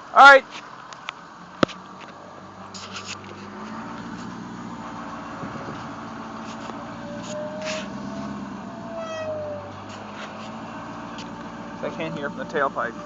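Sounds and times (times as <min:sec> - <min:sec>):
diesel truck engine running: 0:00.0 - 0:13.0.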